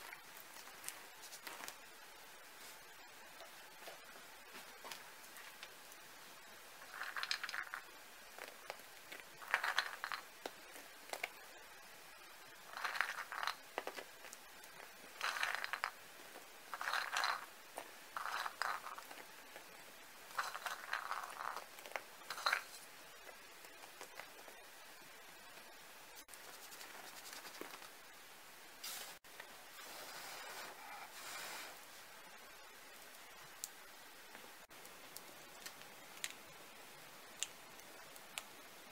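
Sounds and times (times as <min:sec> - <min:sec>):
acorn shells cracking: 0:06.8 - 0:11.4, 0:12.7 - 0:19.7, 0:20.3 - 0:24.4.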